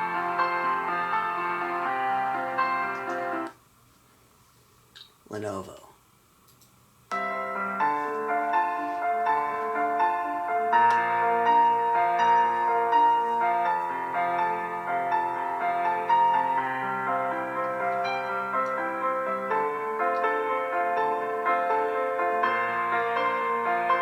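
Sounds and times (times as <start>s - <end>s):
instrumental music through laptop speakers: 0.0s - 3.6s.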